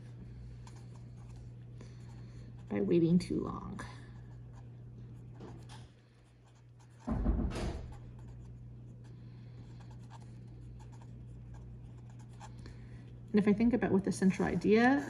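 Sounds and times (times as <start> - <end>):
steady low hum: 0.0 - 15.0
thump and rustle: 7.0 - 8.0.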